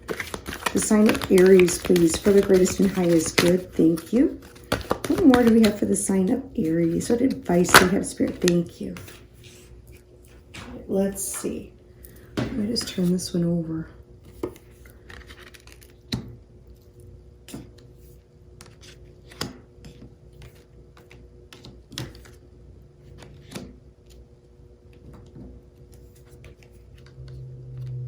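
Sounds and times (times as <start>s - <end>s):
cards tapping and snapping: 0.0s - 5.9s, 6.9s - 9.1s, 18.6s - 22.4s
faint steady hum: 0.0s - 28.0s.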